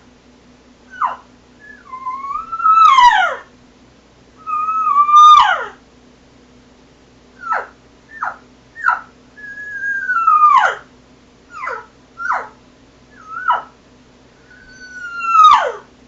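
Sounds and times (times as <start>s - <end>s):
elk call mews: 11.5s - 12.6s, 14.5s - 15.9s.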